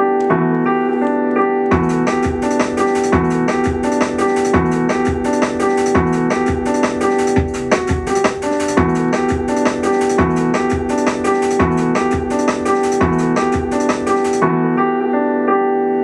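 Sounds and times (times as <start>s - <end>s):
electric piano chords: 0.0s - 16.0s
drum beat: 1.7s - 14.4s.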